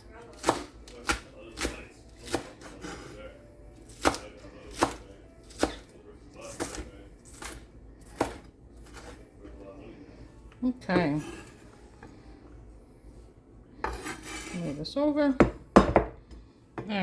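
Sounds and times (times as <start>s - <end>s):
knife chopping on cutting board: 0.3s - 3.2s, 3.9s - 9.2s, 13.8s - 14.5s, 15.4s - 16.9s.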